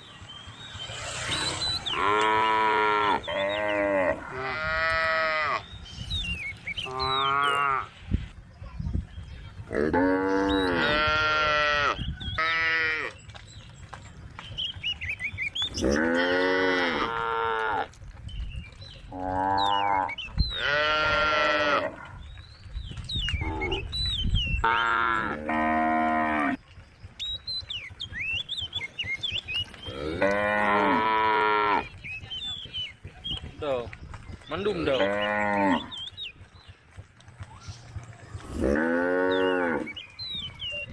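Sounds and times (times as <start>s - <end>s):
cows mooing: 1.2s - 5.7s, 6.8s - 8.0s, 9.7s - 13.2s, 15.7s - 17.9s, 19.1s - 22.2s, 24.6s - 26.6s, 29.8s - 31.9s, 34.7s - 36.0s, 38.4s - 40.0s.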